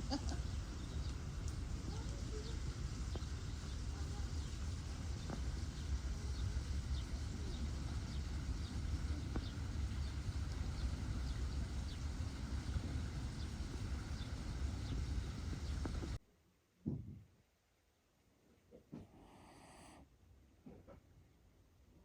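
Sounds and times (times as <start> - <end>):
steady low rumble: 0.0 - 16.2.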